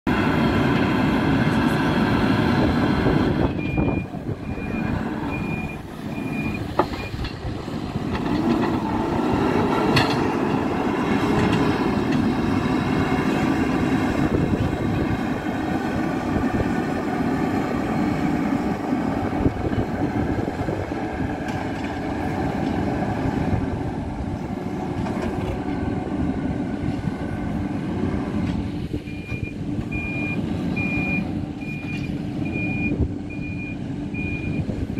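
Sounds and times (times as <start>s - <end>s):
diesel engine under load: 0.1s - 34.9s
reversing alarm beeping: 3.5s - 7.3s, 29.0s - 34.7s.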